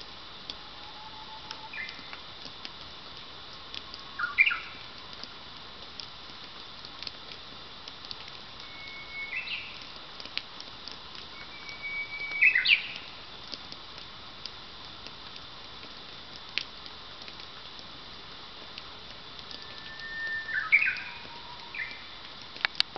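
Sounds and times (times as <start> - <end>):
faint ticks and clicks: 0.0 - 22.9
bird singing whistled song: 0.8 - 2.0, 4.2 - 4.7, 8.6 - 9.9, 11.3 - 13.1, 19.5 - 22.2.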